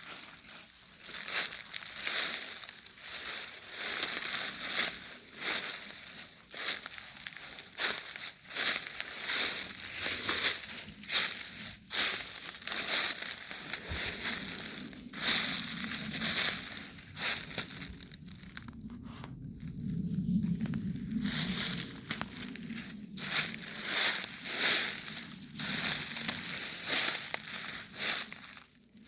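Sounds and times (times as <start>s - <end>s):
footsteps crunching dry leaves: 0.0s - 18.9s, 19.6s - 29.0s.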